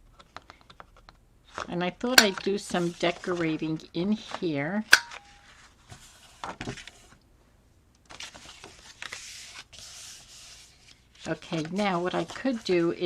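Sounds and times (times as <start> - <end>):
paper rustling and sliding: 2.4 - 4.4, 5.3 - 7.2, 8.1 - 13.0.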